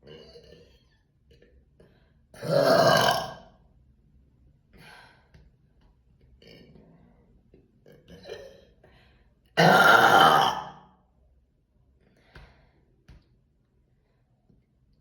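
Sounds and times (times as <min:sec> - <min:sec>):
woman burping: 0:02.4 - 0:03.4, 0:09.6 - 0:10.8.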